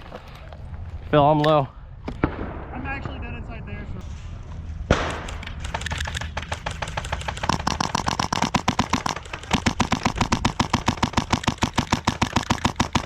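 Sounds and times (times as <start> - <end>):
airsoft guns firing full auto: 4.9 - 13.0.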